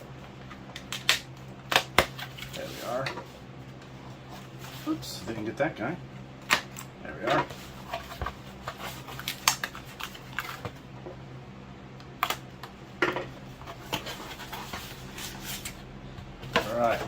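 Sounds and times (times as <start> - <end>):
cardboard scraping and rustling: 7.2 - 10.8, 13.5 - 15.8, 16.4 - 17.0.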